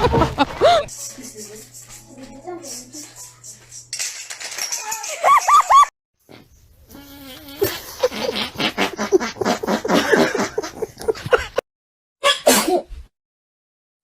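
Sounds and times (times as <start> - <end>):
cat sneezing: 12.3 - 12.9.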